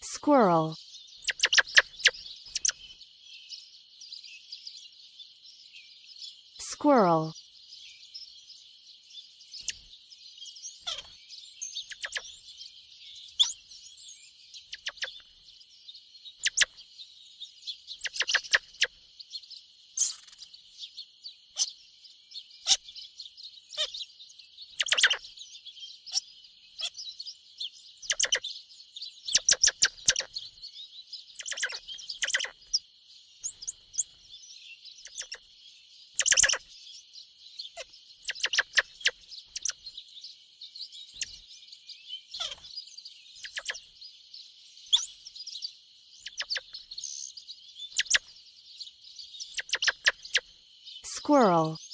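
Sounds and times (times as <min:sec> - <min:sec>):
squirrel chirping: 0:00.0 - 0:02.9, 0:09.6 - 0:09.9, 0:10.8 - 0:11.1, 0:11.8 - 0:12.4, 0:13.3 - 0:13.6, 0:14.6 - 0:15.3, 0:16.4 - 0:16.8, 0:18.0 - 0:18.9, 0:20.0 - 0:20.4, 0:24.8 - 0:25.2, 0:28.0 - 0:28.4, 0:29.3 - 0:30.4, 0:31.4 - 0:32.8, 0:33.4 - 0:34.2, 0:35.0 - 0:35.4, 0:36.2 - 0:36.7, 0:38.2 - 0:39.8, 0:41.2 - 0:41.4, 0:42.4 - 0:42.6, 0:43.4 - 0:43.8, 0:44.9 - 0:45.2, 0:46.2 - 0:47.2, 0:47.9 - 0:48.3, 0:49.4 - 0:51.9.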